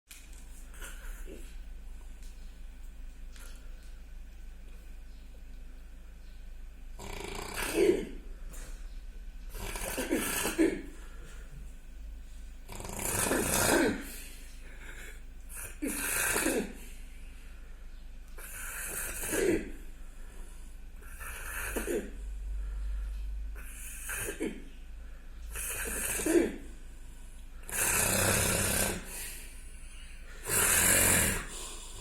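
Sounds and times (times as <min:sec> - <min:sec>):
person snoring: 0:09.5 - 0:10.8, 0:12.7 - 0:14.3, 0:14.9 - 0:16.8, 0:27.6 - 0:29.7, 0:30.3 - 0:32.0.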